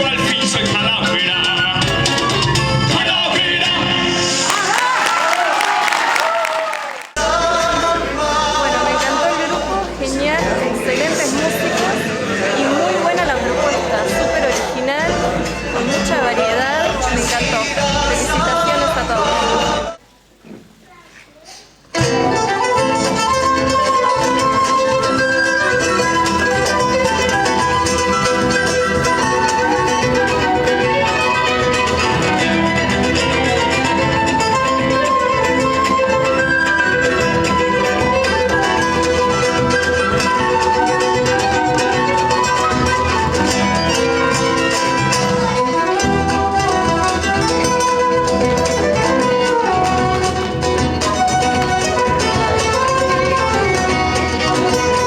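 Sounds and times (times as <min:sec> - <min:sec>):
guitar: 0:00.0 - 0:04.7, 0:07.2 - 0:20.8, 0:21.8 - 0:55.0
violin melody: 0:22.0 - 0:55.0.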